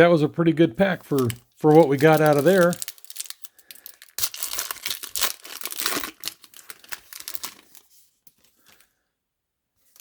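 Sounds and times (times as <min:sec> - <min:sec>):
wrapper crinkling and tearing: 0:01.0 - 0:08.0.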